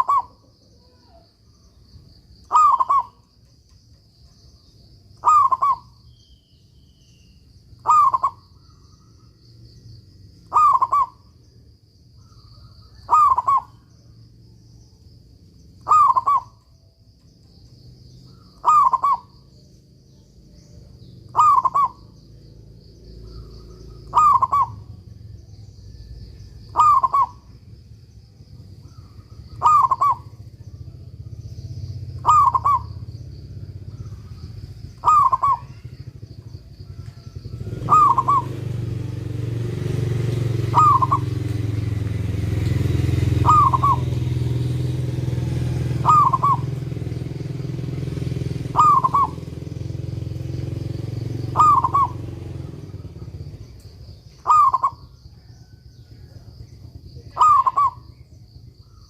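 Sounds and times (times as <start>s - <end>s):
dove cooing: 0.0s - 1.2s, 2.4s - 3.3s, 5.1s - 6.0s, 7.8s - 8.5s, 10.4s - 11.2s, 12.2s - 13.9s, 15.7s - 16.6s, 18.3s - 19.5s, 20.6s - 22.2s, 23.2s - 27.7s, 28.6s - 42.4s, 43.1s - 44.4s, 45.3s - 53.7s, 54.4s - 59.0s
low engine rumble: 0.0s - 59.0s.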